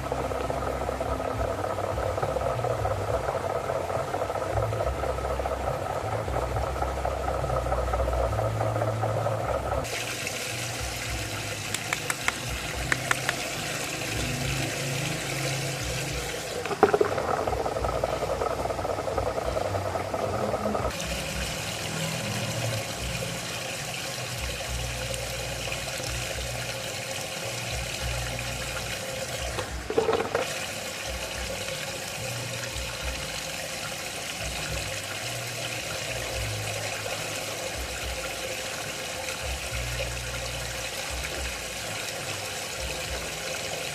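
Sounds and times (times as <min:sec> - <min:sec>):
water rushing in a whirlpool: 0:00.0 - 0:43.9
knocks and splashes: 0:11.7 - 0:13.6, 0:16.6 - 0:18.6, 0:29.5 - 0:30.6.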